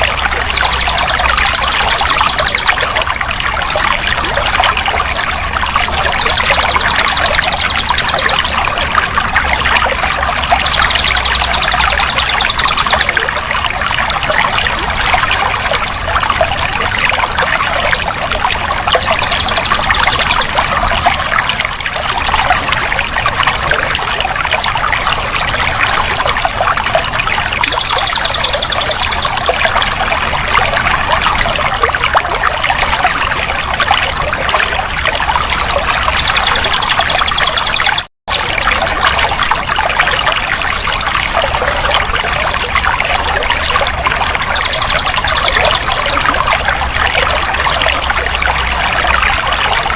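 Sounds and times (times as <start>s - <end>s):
water running and trickling: 0.0s - 49.9s
high rapid trill: 0.5s - 2.8s.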